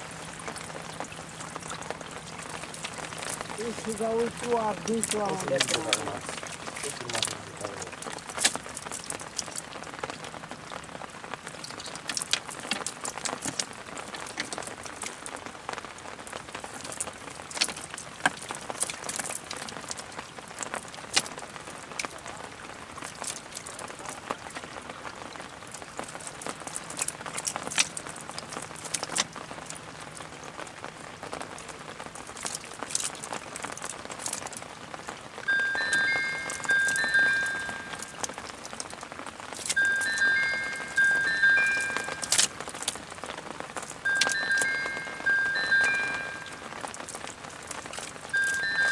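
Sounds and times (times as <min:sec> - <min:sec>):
water drops pattering: 0:00.0 - 0:15.4, 0:31.4 - 0:48.9.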